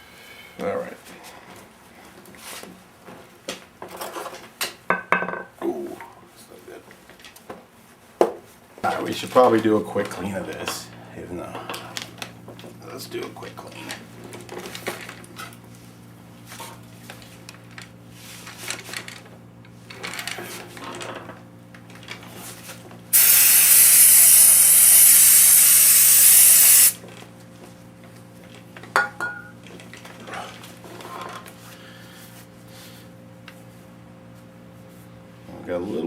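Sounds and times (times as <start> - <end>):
aerosol spray hissing: 23.2 - 27.0.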